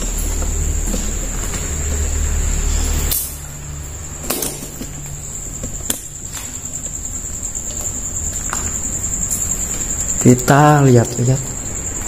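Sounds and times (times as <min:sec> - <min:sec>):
cricket trilling: 0:00.0 - 0:12.0
road traffic rumble: 0:00.0 - 0:12.0.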